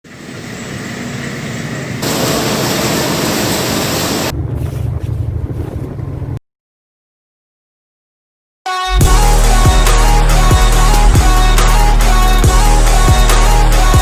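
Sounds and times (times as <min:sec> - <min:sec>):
boat engine rumble: 0:00.2 - 0:06.4
wind and sea rushing: 0:02.0 - 0:06.4.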